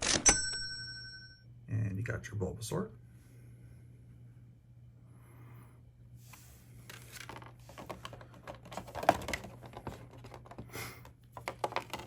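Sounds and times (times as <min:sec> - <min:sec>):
cards and packaging clicks and rustles: 0:06.7 - 0:12.0.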